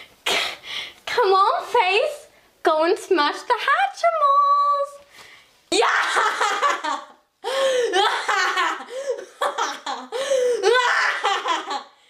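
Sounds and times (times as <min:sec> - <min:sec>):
girl laughing hard: 0:05.7 - 0:12.0.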